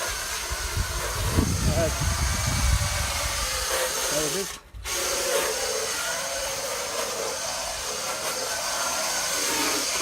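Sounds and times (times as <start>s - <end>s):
power tool whirring: 0.0s - 10.0s.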